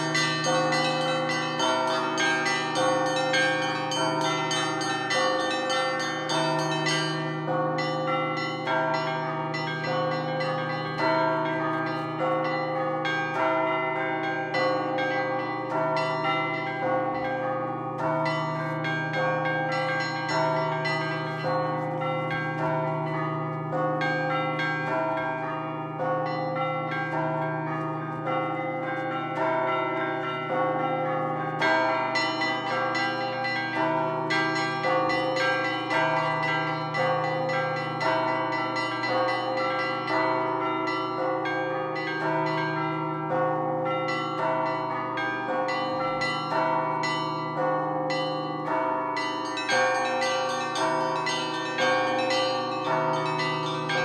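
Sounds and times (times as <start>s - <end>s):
small bells chiming rapidly: 0.0s - 11.3s, 48.1s - 54.0s
large bells ringing: 0.0s - 54.0s.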